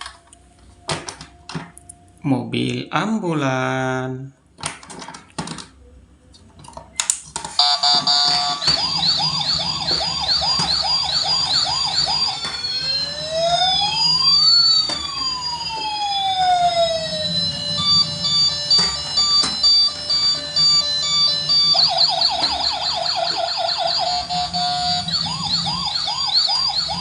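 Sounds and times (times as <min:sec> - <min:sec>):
electronic beeps: 0:07.6 - 0:27.0
toy electronic siren: 0:07.6 - 0:27.0.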